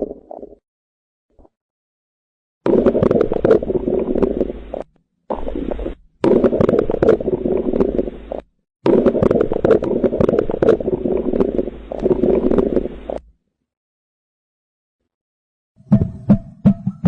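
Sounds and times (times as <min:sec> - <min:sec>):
bowel gurgling with crackles: 0:00.0 - 0:00.6, 0:02.6 - 0:13.3.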